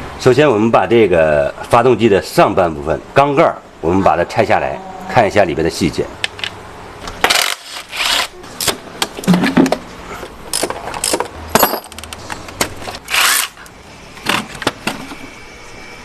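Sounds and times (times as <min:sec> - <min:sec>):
metal tools clinking on engine parts: 0:10.5 - 0:12.4.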